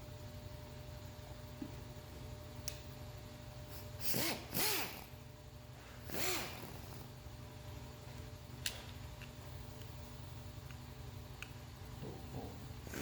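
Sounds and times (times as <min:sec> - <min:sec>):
power drill spinning up: 0:04.0 - 0:05.1, 0:06.0 - 0:07.0.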